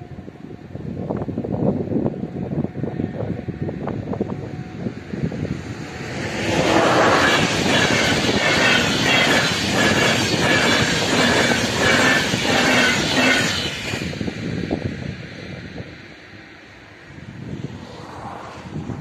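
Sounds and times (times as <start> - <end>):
passenger train rushing rumble: 0.0 - 19.0
clatter of train wheels: 5.4 - 16.0.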